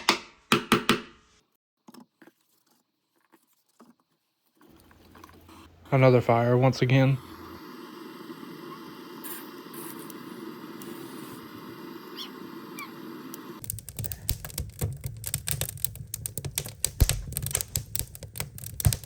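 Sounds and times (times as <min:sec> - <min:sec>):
wood fire crackling and popping: 0:04.6 - 0:19.0
wood fire low rush: 0:04.6 - 0:19.0.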